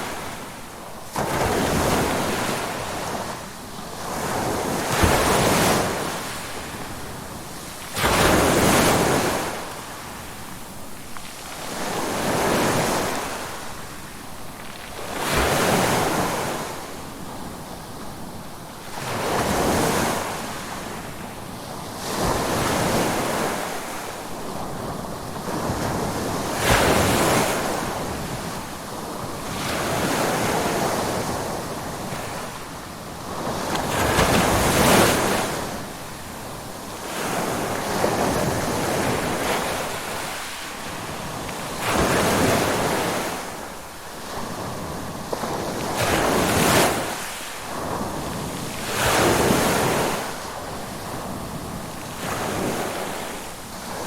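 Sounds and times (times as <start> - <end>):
ocean waves breaking on shore: 0.0 - 54.0.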